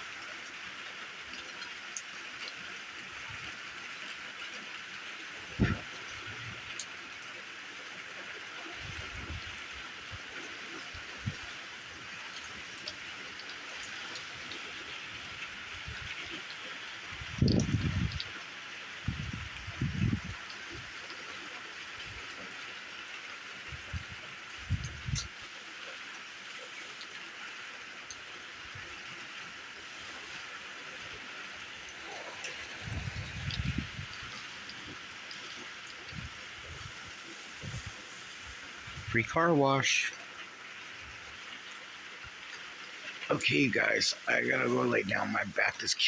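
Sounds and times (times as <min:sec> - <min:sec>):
steady rain falling: 0:00.0 - 0:46.0
heavy rain hissing: 0:29.8 - 0:46.0.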